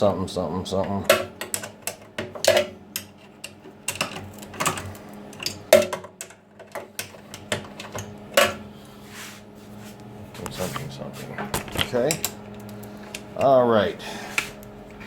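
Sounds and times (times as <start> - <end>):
faint steady hum: 0.0 - 15.0
tools clicking and knocking: 1.0 - 8.6.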